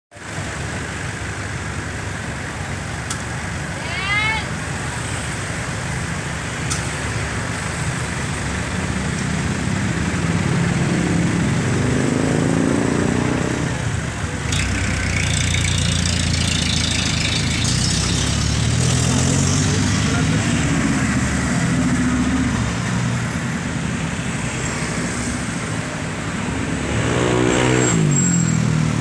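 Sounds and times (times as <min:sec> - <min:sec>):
traffic noise: 0:00.1 - 0:29.0
vehicle engine running: 0:13.4 - 0:21.6.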